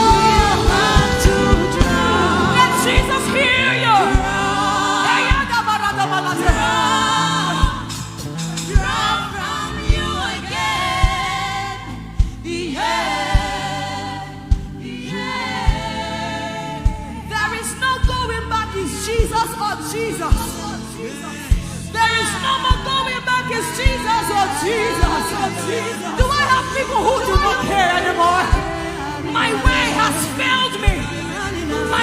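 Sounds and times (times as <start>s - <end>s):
person singing with vibrato: 0.0s - 14.0s, 14.8s - 32.0s
drum beat: 0.0s - 16.2s, 16.8s - 17.3s, 20.3s - 20.7s, 23.8s - 28.8s, 29.5s - 31.3s
sustained keyboard chords: 0.0s - 32.0s.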